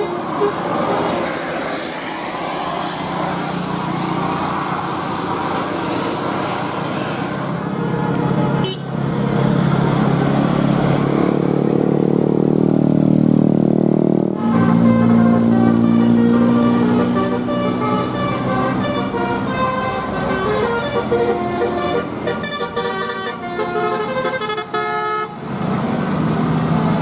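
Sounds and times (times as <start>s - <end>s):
multi-tone musical air horn: 0.0s - 1.2s, 7.8s - 8.9s, 14.4s - 25.4s
bus engine: 0.0s - 27.0s
road noise: 0.0s - 27.0s.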